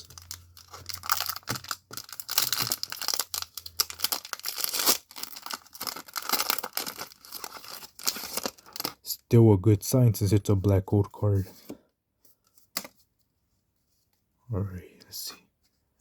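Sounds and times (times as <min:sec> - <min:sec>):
foil wrapper tearing and crinkling: 0:00.0 - 0:09.0.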